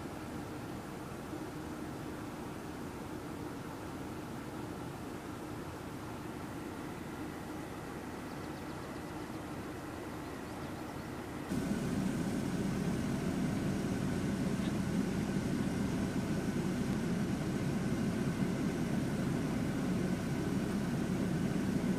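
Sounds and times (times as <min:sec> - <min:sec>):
vehicle rumble and hiss: 0:11.2 - 0:21.9.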